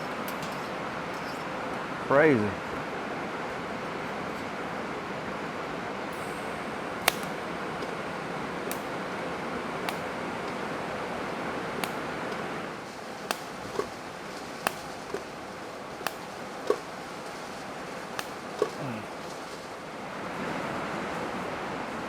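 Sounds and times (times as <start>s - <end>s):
sharp pings: 6.2s - 9.0s.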